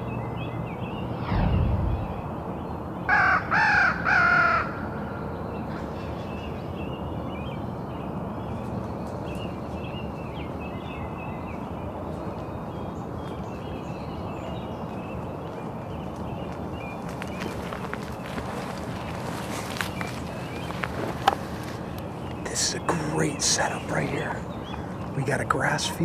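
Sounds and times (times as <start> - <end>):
crow cawing: 3.1 - 4.9.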